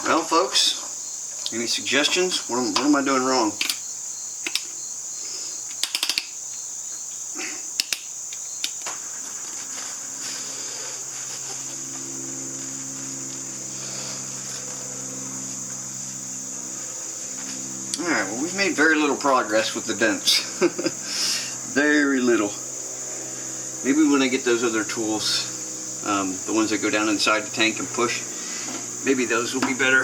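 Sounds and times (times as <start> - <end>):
high-pitched insect trill: 0.0 - 30.0
sharp clicks and taps: 3.6 - 3.8, 4.4 - 4.8, 5.7 - 6.4, 7.8 - 8.9.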